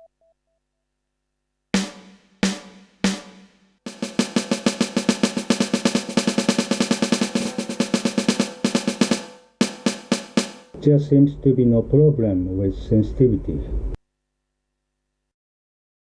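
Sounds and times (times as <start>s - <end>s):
electronic snare drum hits: 1.8s - 10.8s
fast snare roll: 1.8s - 10.8s.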